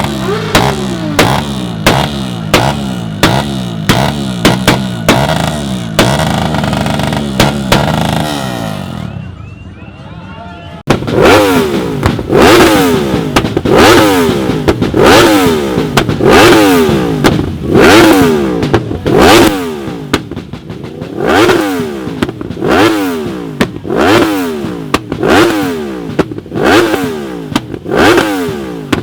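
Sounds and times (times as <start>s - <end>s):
motorcycle engine revving: 0.0s - 9.3s, 10.9s - 29.0s.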